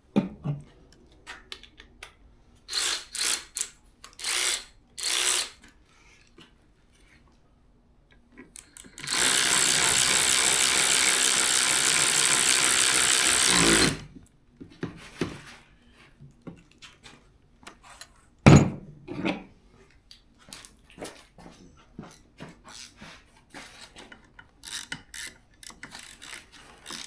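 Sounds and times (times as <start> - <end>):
power drill running: 2.7 - 5.6, 8.6 - 14.1.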